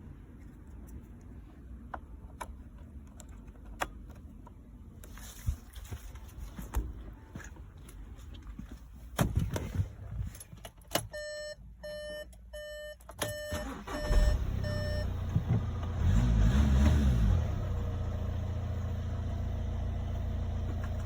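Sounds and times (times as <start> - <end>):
car warning chime beeping: 11.1 - 15.2
diesel engine starting and idling: 13.2 - 21.0.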